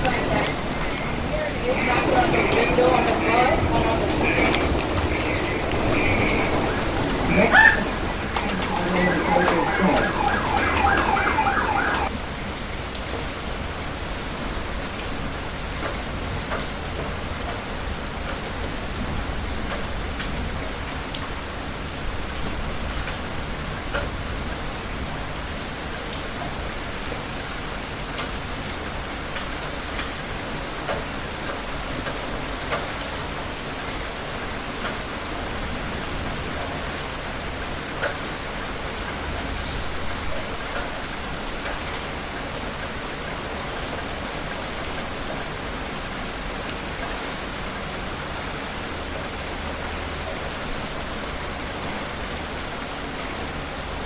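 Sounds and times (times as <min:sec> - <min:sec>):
raindrops ticking: 0:00.0 - 0:12.1
heavy rain: 0:00.0 - 0:54.0.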